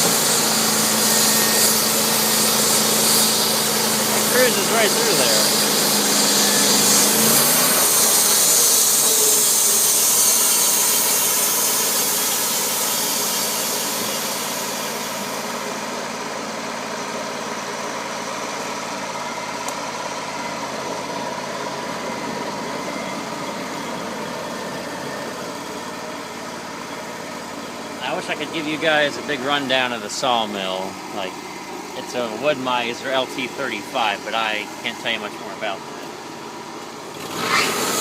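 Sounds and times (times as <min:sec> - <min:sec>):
saw blade hissing through log: 0:00.0 - 0:15.9, 0:37.2 - 0:38.0
gas engine running: 0:00.0 - 0:38.0.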